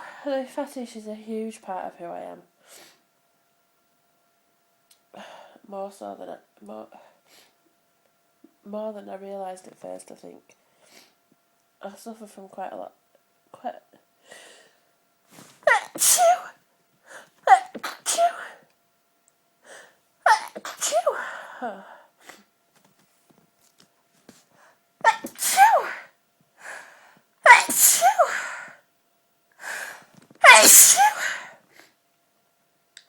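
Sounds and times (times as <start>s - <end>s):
woman sneezing: 15.6s - 16.6s, 17.4s - 18.6s, 20.3s - 22.5s, 25.0s - 26.1s, 27.5s - 28.7s, 30.4s - 31.6s.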